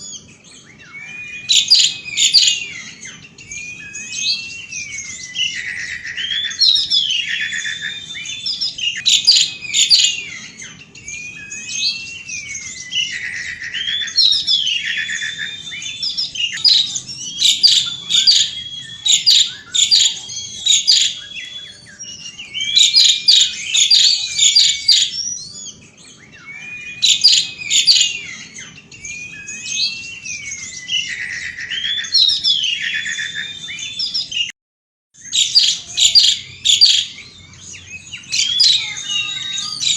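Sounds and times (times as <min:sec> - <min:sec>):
starling singing: 0:00.0 - 0:34.5, 0:35.2 - 0:39.9
harsh chattering: 0:12.9 - 0:25.8.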